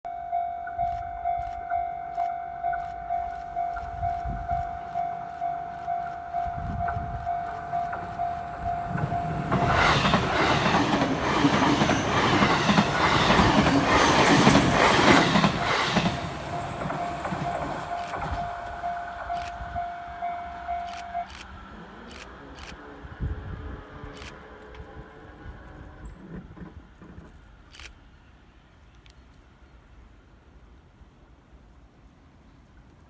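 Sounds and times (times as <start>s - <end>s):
level crossing warning bell: 0.1s - 21.3s
train wheels rushing on rail: 2.8s - 27.8s.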